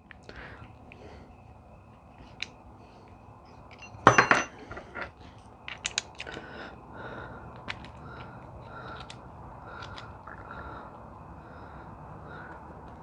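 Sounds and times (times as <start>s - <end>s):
metal hardware clinking: 3.7s - 5.2s.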